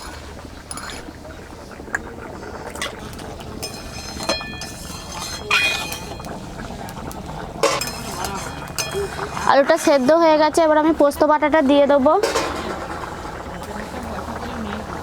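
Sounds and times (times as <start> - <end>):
metal kitchen utensils clinking: 0.0 - 1.1, 2.8 - 10.5, 12.1 - 13.9.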